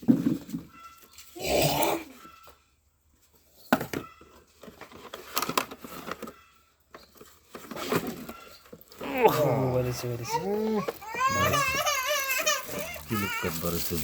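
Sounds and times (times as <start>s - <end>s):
plastic and cardboard packaging crinkling: 3.9s - 14.0s.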